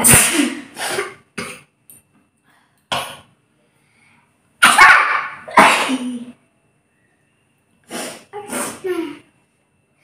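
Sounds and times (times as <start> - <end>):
person sneezing: 0.0 - 1.6, 4.6 - 6.3, 7.9 - 9.1.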